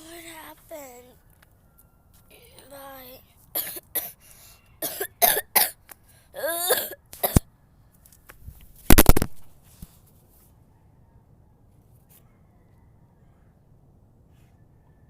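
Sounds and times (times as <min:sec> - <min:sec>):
girl coughing: 0:03.6 - 0:04.2, 0:04.8 - 0:05.8, 0:06.4 - 0:07.4.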